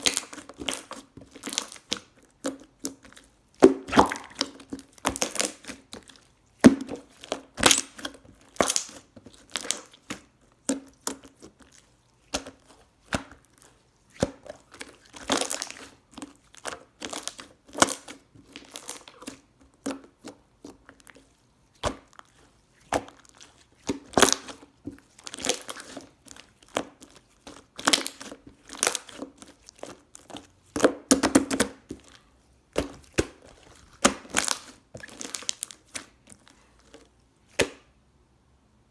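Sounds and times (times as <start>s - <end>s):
crinkling and tearing: 32.8s - 37.1s.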